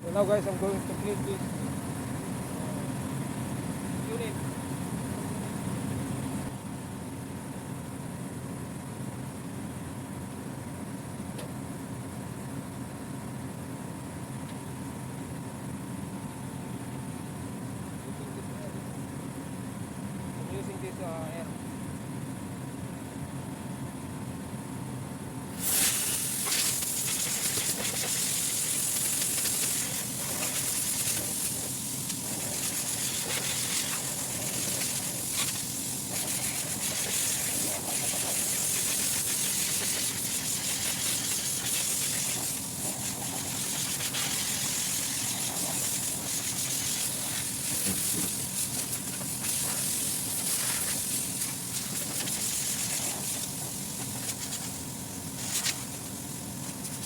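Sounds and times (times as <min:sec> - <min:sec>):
low machinery hum: 0:00.0 - 0:57.0
air blow gun hissing: 0:25.5 - 0:57.0.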